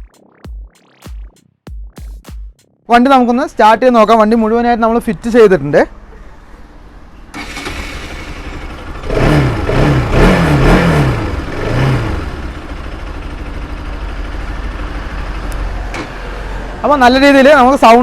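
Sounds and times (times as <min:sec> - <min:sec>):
motorcycle engine starting and revving: 0:07.2 - 0:17.8.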